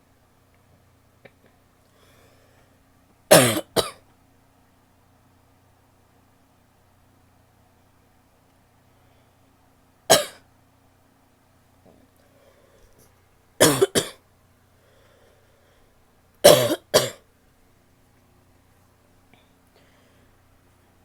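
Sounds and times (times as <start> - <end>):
woman coughing wetly: 3.3 - 4.0, 10.1 - 10.4, 13.6 - 14.2, 16.4 - 17.2.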